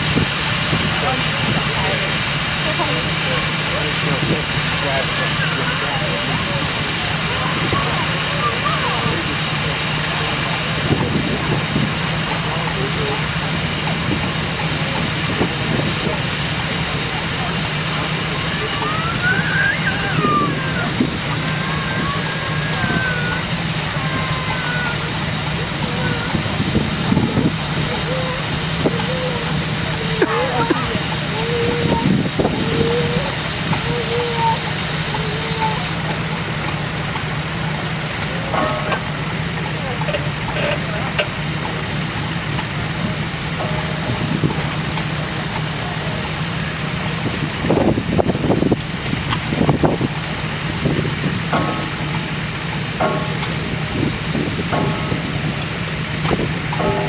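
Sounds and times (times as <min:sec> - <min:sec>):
steam engine running: 0:00.0 - 0:57.0
thin wavering high tones: 0:18.0 - 0:41.0.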